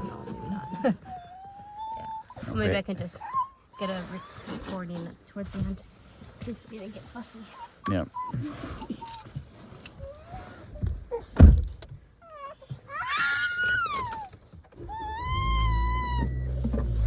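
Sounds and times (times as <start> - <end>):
puppy whining: 0.0 - 4.8, 7.4 - 11.4, 12.2 - 17.0
car engine running: 16.1 - 17.0.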